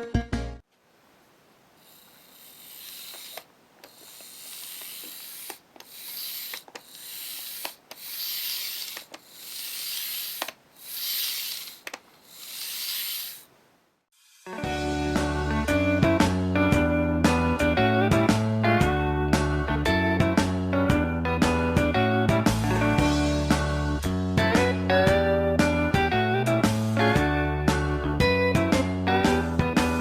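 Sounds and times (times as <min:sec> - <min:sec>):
model train motor whirring: 0:01.8 - 0:13.5.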